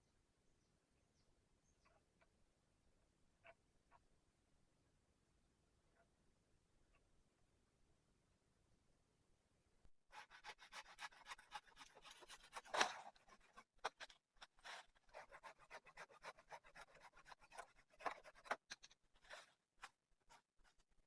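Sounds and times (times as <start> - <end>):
faint rapid scratching and crackling: 10.1 - 21.0.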